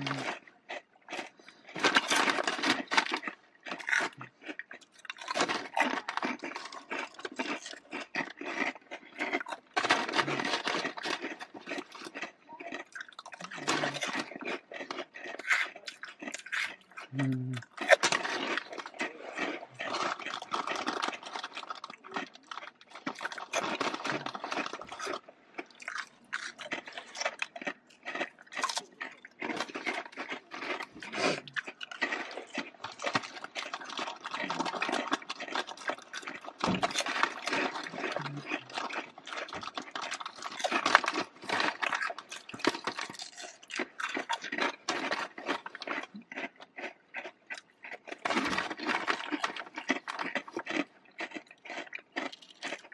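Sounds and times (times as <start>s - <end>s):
crisps being crunched: 0.0s - 52.9s.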